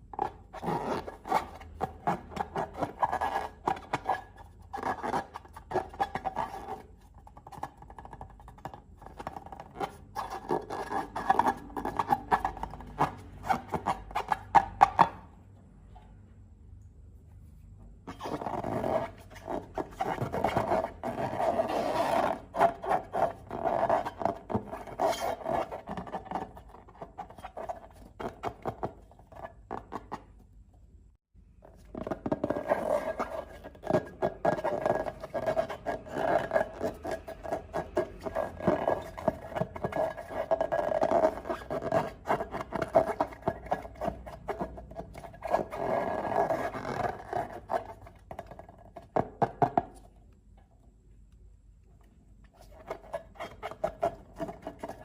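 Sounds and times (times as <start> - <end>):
slime crackling and scraping: 0.0 - 15.2.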